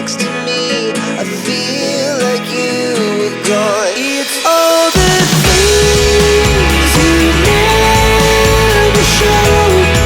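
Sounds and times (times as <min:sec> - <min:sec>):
rock music with guitar and bass: 0:00.0 - 0:10.0.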